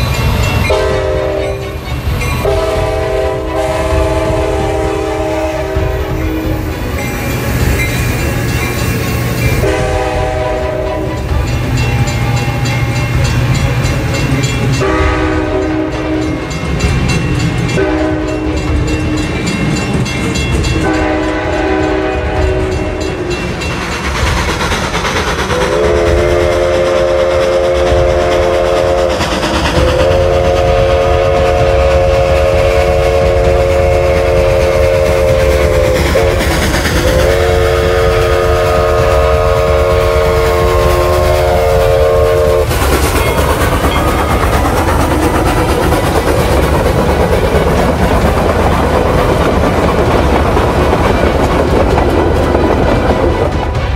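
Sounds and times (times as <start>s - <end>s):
train rumble and clickety-clack: 0.0s - 53.9s
train air horn blasts: 0.7s - 6.8s, 9.6s - 12.7s, 14.7s - 16.6s, 17.7s - 18.7s, 20.8s - 23.4s, 25.5s - 43.4s.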